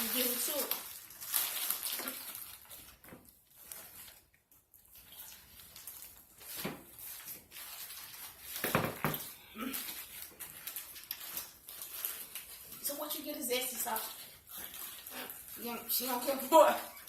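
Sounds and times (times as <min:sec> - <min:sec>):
wet chewing and lip-smacking: 0:13.8 - 0:15.6.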